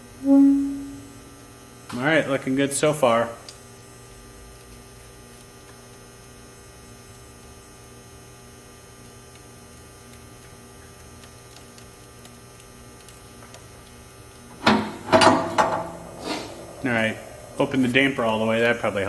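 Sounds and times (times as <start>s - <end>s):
electrical hum: 0.0s - 19.0s.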